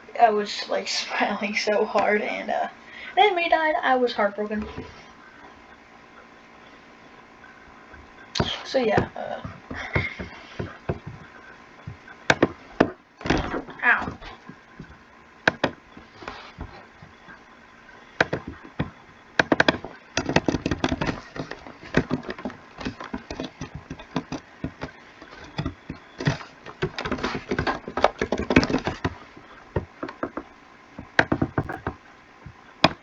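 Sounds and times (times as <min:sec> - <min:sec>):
clicks and knocks: 0:07.9 - 0:17.4, 0:18.2 - 0:33.0.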